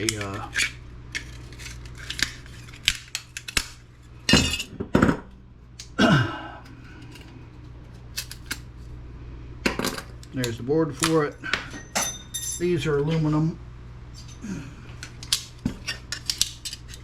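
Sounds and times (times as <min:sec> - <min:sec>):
steady low hum: 0:00.0 - 0:17.0
metal parts clicking and clinking: 0:09.8 - 0:13.2, 0:15.0 - 0:17.0.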